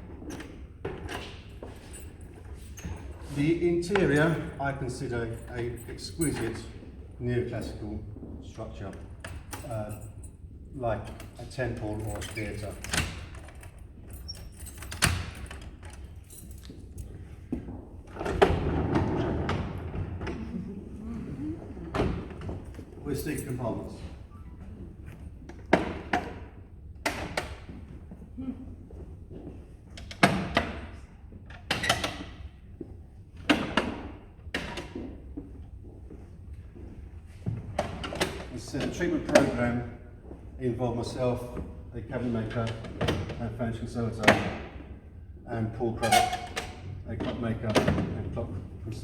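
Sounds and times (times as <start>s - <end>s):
sliding rattling desk mechanism: 11.2s - 21.0s
wooden desk doors and lock clicking: 12.0s - 16.7s.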